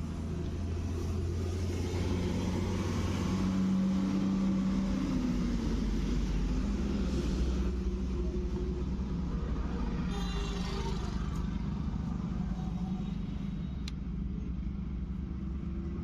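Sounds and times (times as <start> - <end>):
truck diesel engine idling: 7.8 - 16.0.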